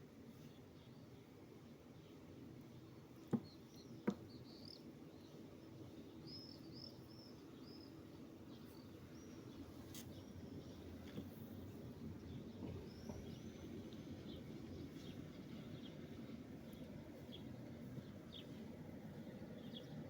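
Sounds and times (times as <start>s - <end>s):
small birds chirping: 0.3s - 20.0s
low street rumble: 5.9s - 20.0s.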